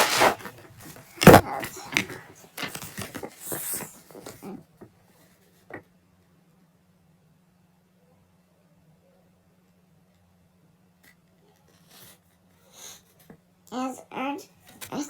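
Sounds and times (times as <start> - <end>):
clattering and rustling: 0.0 - 4.5.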